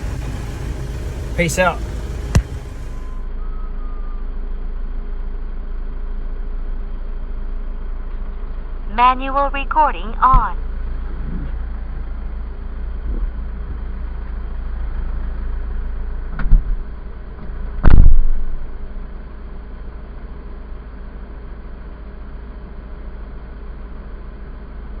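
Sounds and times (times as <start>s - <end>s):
loud thump: 0.0s - 3.2s
diesel truck engine idling: 0.0s - 3.3s
short knock: 2.1s - 3.1s.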